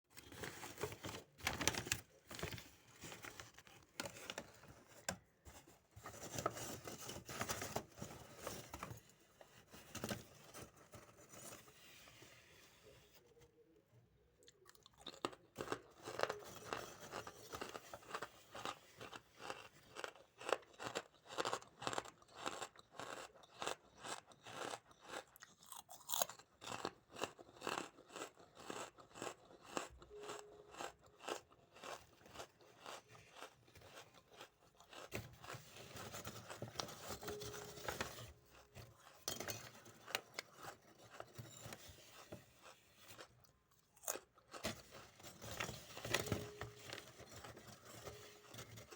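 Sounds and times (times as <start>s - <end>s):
chewing crunchy food: 14.4s - 36.6s, 40.0s - 45.0s.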